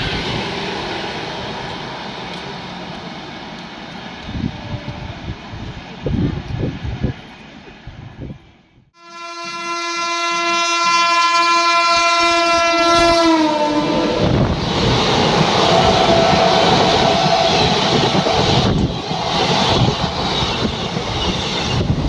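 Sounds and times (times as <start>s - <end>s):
train wheels clacking on track: 0.0s - 7.7s, 12.5s - 22.0s
train horn blast: 9.0s - 14.4s.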